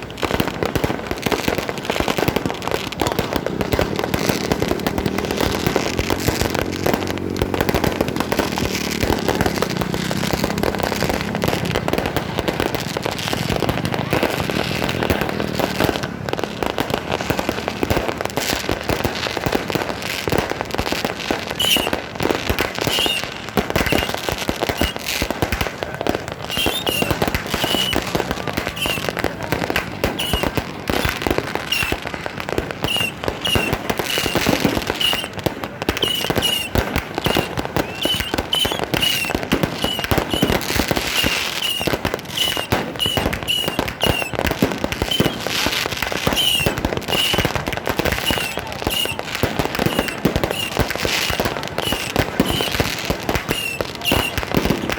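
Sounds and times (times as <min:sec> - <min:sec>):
fireworks popping and banging: 0:00.0 - 0:54.9
short high chirps: 0:23.8 - 0:24.1, 0:24.8 - 0:25.0, 0:26.5 - 0:28.0, 0:31.7 - 0:31.9, 0:35.0 - 0:35.3, 0:37.3 - 0:40.5, 0:41.2 - 0:44.3, 0:48.2 - 0:49.2.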